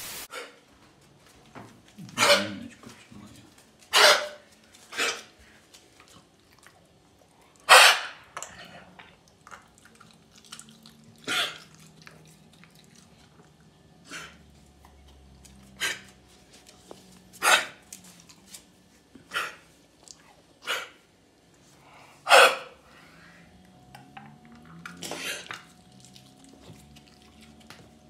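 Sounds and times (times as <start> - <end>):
dog sneezing: 3.9 - 5.3, 7.7 - 8.2.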